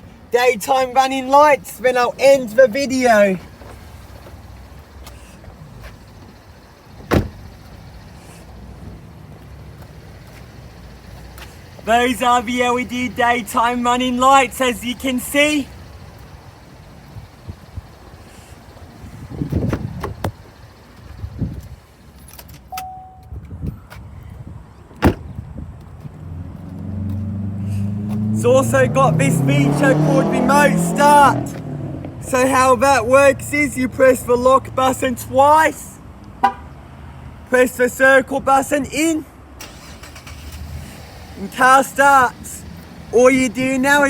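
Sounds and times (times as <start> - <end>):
car door shutting: 7.0 - 7.5, 19.5 - 20.4, 25.0 - 25.4
wind rumble on microphone: 19.0 - 21.8, 23.2 - 26.8
short beep: 22.7 - 23.4.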